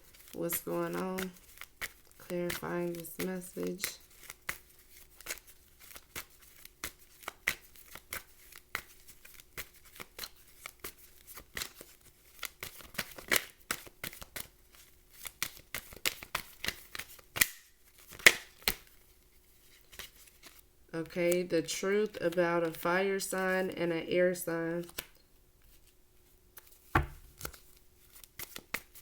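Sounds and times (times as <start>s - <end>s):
cards snapping and rustling: 1.2s - 3.2s, 3.8s - 19.0s, 26.6s - 29.0s.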